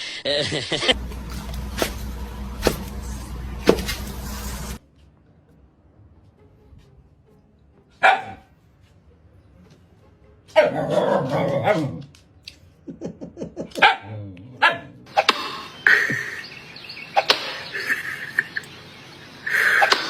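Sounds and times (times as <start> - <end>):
dog barking: 8.0 - 8.5, 10.6 - 12.0, 13.8 - 15.0.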